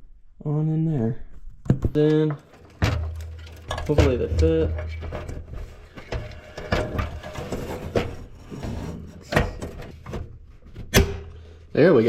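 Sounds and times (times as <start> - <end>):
metal cage scraping: 2.4 - 10.4.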